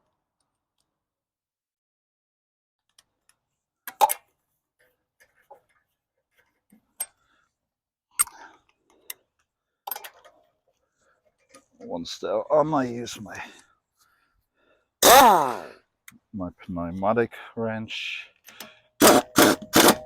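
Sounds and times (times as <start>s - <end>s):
metallic clicks of wheel bolts: 2.9s - 4.4s, 6.7s - 7.3s, 8.1s - 10.5s.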